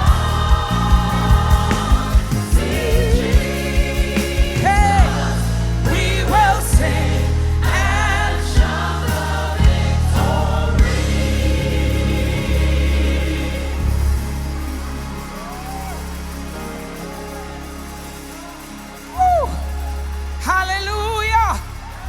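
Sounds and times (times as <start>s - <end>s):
drum hits: 0.0s - 12.6s
lead singer with vibrato: 0.0s - 16.5s
backing singers: 0.0s - 20.5s
bass line: 0.0s - 22.0s.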